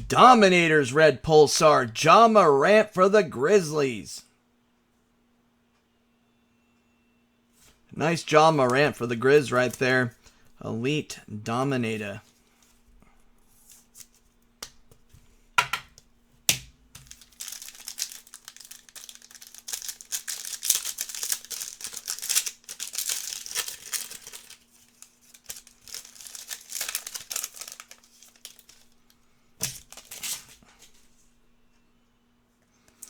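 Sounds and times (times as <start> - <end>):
foil wrapper tearing and crinkling: 17.0 - 30.6.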